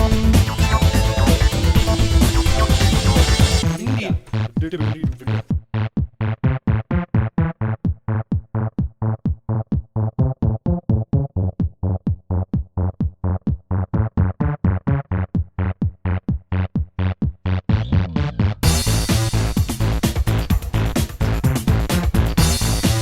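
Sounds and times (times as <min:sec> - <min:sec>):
clipped synth notes: 0:00.0 - 0:05.5
low bass line: 0:00.0 - 0:23.0.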